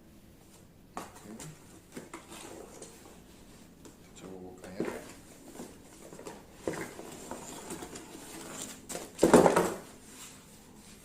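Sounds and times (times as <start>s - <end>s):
packaging rustling: 4.8s - 9.9s.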